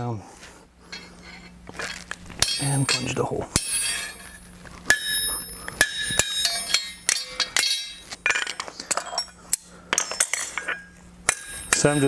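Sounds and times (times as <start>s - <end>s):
hammer striking metal punch: 2.4s - 8.5s, 10.0s - 12.0s.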